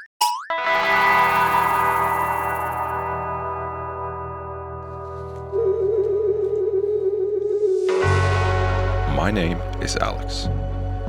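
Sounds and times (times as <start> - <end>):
sustained ringing tones: 0.5 - 4.2
low drone: 6.8 - 11.0.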